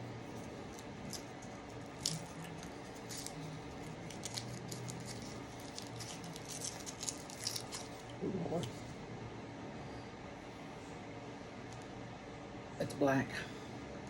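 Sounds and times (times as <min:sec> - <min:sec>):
plastic package crinkling: 0:00.2 - 0:08.2.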